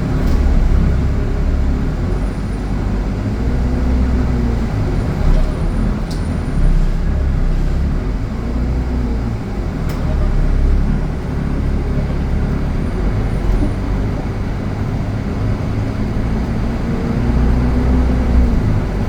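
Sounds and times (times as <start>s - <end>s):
road noise: 0.0s - 19.0s
vehicle engine rumble: 0.0s - 19.0s.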